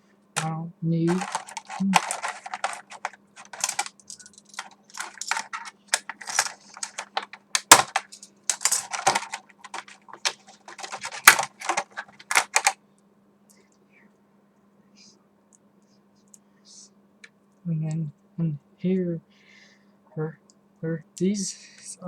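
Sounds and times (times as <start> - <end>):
packaging rustling and crinkling: 1.1 - 12.8.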